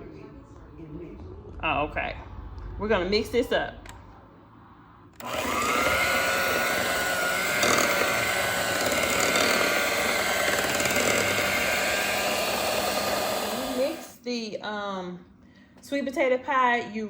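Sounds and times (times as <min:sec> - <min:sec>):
electric mixer motor whirring: 0:05.2 - 0:14.2.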